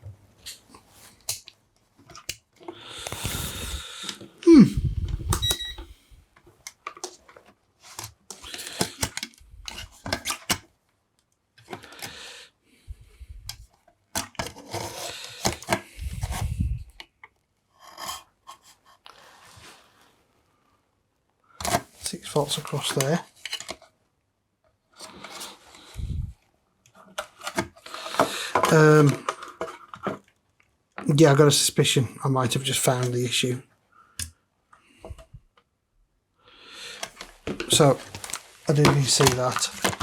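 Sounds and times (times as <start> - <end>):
clicks and knocks of handling: 1.2 - 3.3, 6.4 - 12.2, 13.5 - 16.4, 21.6 - 23.8, 26.8 - 30.3, 37.0 - 40.0.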